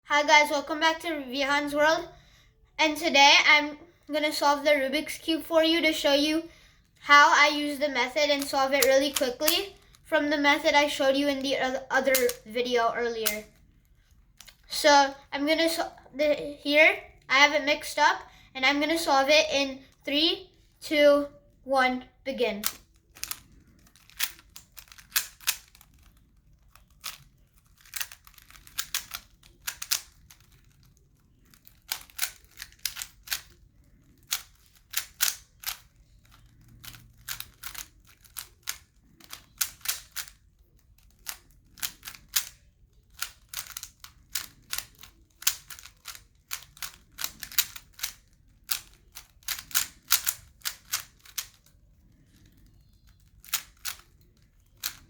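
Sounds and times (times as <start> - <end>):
puzzle cube plastic clicks: 7.8 - 12.4, 22.6 - 55.0.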